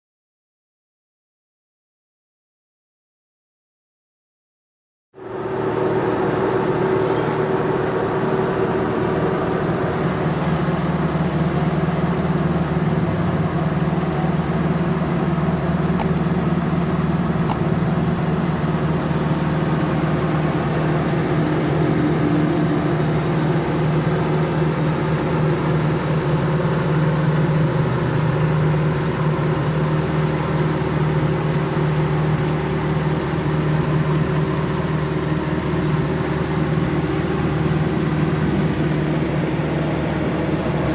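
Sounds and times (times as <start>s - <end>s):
car engine idling: 5.2s - 40.9s.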